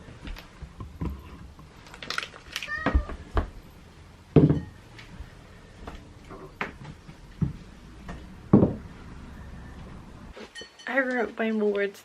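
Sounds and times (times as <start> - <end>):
household knocks and thuds: 4.3 - 4.8, 8.2 - 8.9.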